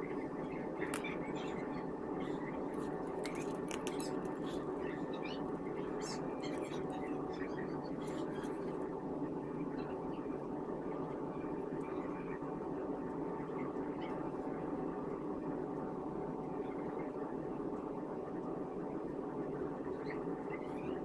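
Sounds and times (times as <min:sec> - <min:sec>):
faint small clicks: 0:03.2 - 0:04.4.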